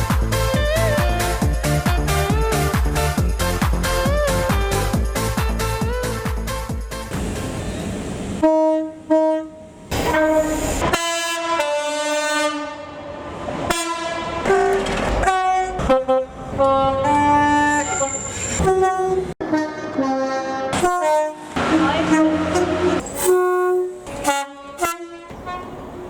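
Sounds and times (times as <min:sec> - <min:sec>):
two-tone train horn: 0:08.4 - 0:26.0.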